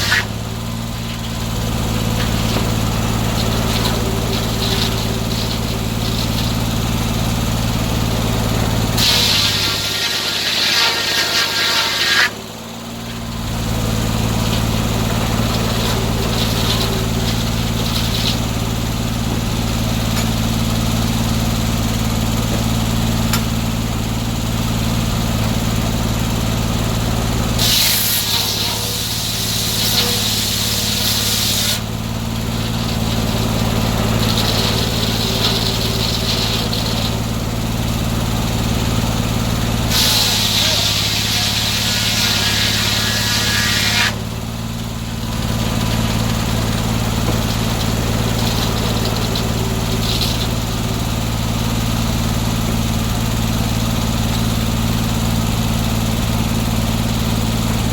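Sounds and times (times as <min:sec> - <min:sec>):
saw blade cutting wood: 0:00.0 - 0:20.4, 0:27.6 - 0:52.3
sawmill engine running: 0:00.0 - 0:57.9.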